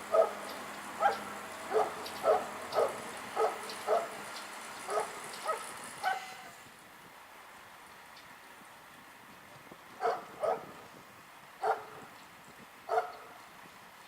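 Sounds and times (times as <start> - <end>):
dog barking short high yaps: 4.9 - 6.5.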